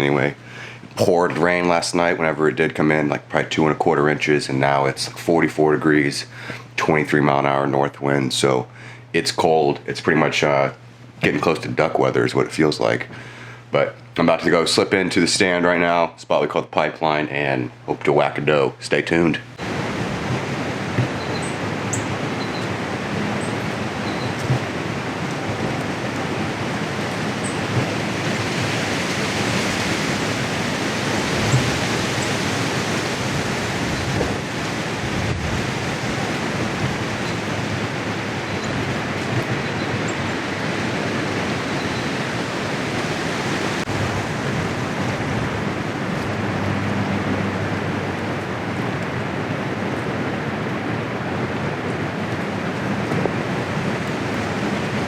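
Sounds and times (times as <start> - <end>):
strong wind rushing: 19.6 - 55.0.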